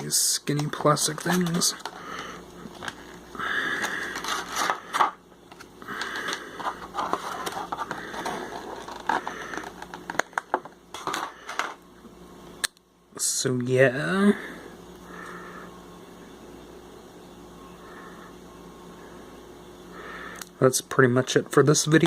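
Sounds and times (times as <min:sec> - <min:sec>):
plastic packet crinkling: 0:00.6 - 0:02.1, 0:03.8 - 0:11.4.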